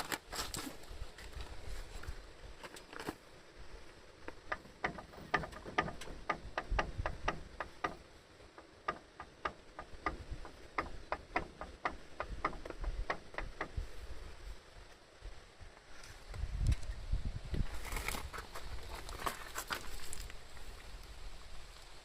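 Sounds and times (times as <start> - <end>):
rapid engine ticking: 4.3 - 14.4.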